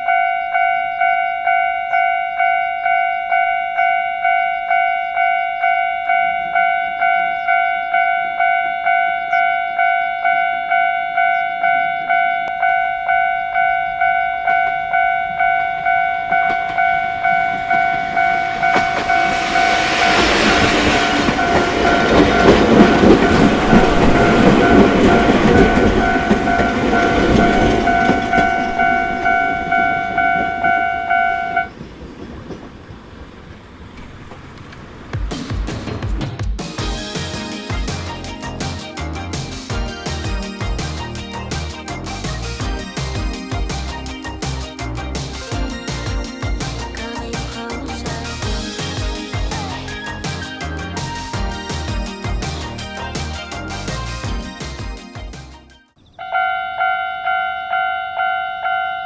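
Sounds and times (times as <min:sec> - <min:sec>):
level crossing bell ringing: 0:00.0 - 0:20.0, 0:21.2 - 0:31.7, 0:56.1 - 0:59.0
train passing over crossing: 0:00.0 - 0:36.0, 0:36.7 - 0:59.0.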